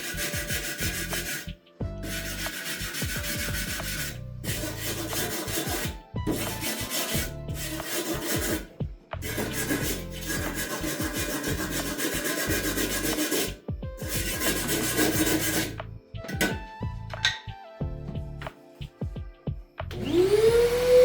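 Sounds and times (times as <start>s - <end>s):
abrasive scraping on metal lid: 0.0s - 15.8s.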